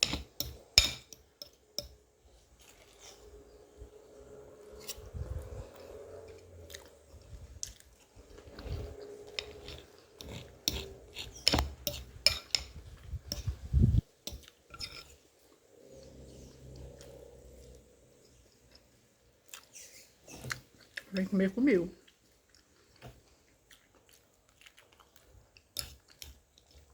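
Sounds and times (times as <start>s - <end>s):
chewing and mouth sounds: 4.6s - 12.0s, 22.0s - 26.9s
cutlery clicking against dish: 10.2s - 13.5s.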